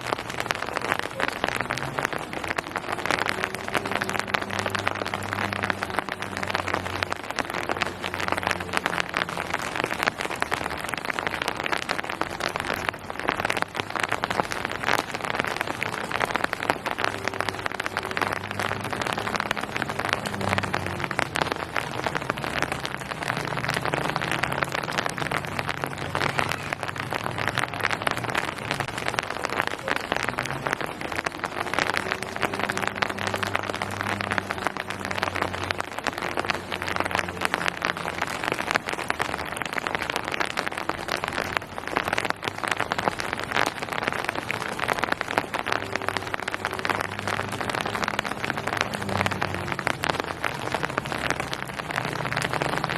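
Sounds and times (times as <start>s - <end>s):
rain on hard surfaces: 0.0s - 52.9s.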